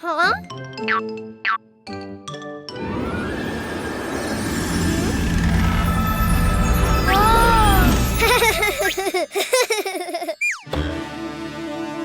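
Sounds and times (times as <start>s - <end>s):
background music: 0.0s - 12.0s
cartoon baby giggling: 8.2s - 10.7s.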